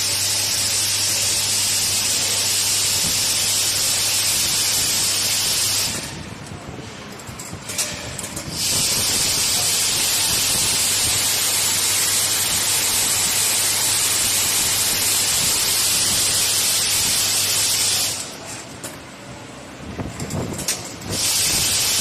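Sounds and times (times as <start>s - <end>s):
soldering machine hissing: 0.0s - 6.2s, 8.5s - 18.4s, 21.1s - 22.0s.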